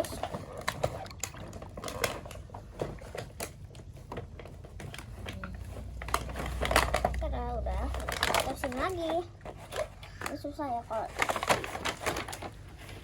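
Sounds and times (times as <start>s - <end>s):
watery squishes: 0.0s - 3.9s.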